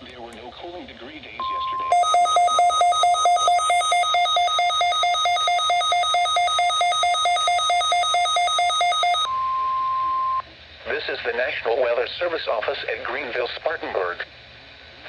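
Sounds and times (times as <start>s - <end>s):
steady high tone: 1.5s - 9.4s
electronic two-tone warble alarm: 1.5s - 9.6s.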